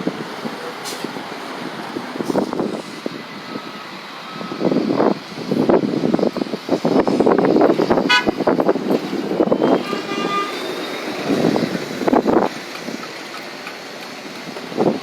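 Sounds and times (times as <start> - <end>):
bus engines rumbling: 0.0 - 15.0
bus horn toot: 8.0 - 8.5, 9.5 - 10.9.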